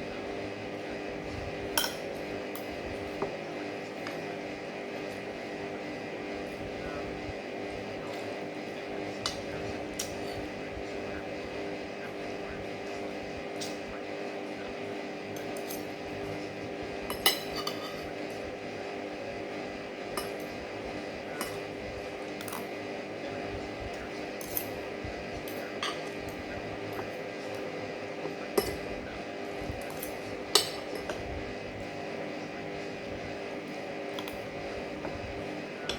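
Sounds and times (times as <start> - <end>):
cutlery clinking on a plate: 1.8 - 2.7, 15.4 - 15.9, 17.1 - 18.1, 22.4 - 22.7, 25.4 - 26.4, 28.5 - 28.9, 29.8 - 31.2.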